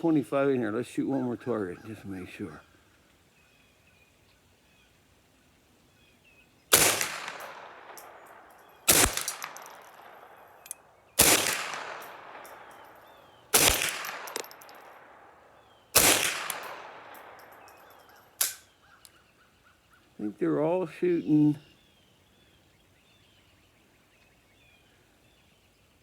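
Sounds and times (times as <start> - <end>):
gunshots with long echo: 6.7 - 18.5.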